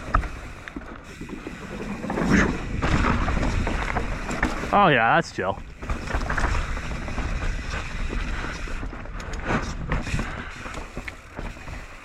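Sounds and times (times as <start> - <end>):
bike knocks and rattles: 0.0 - 4.8, 5.6 - 12.0
bike tyre noise on trail: 0.0 - 12.0
wind rumbling on microphone: 5.6 - 12.0.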